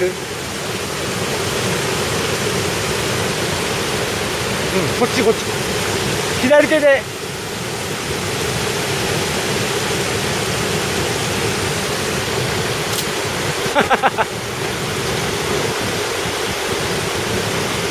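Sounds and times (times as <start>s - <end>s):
waterfall rushing: 0.0s - 17.9s.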